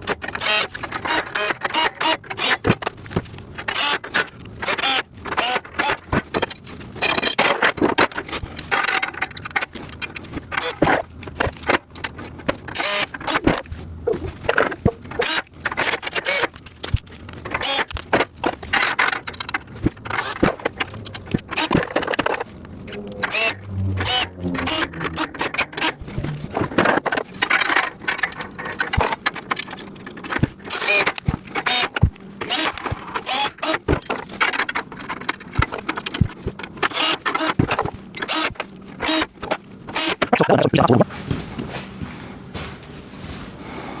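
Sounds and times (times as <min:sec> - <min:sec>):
plastic bins being handled: 0:05.9 - 0:23.4.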